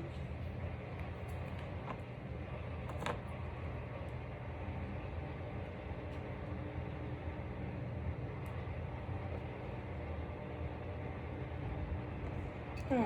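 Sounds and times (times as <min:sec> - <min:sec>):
low background hum: 0:00.0 - 0:13.0.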